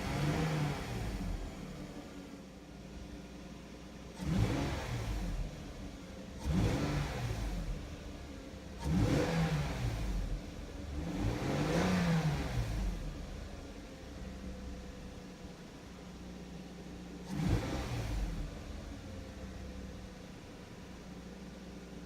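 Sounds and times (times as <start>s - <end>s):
car engine idling and revving: 0.0s - 22.0s.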